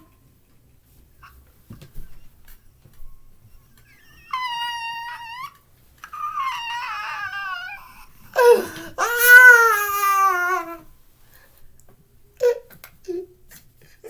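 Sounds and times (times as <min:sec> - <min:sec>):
high-pitched whimpering: 0:03.8 - 0:10.8.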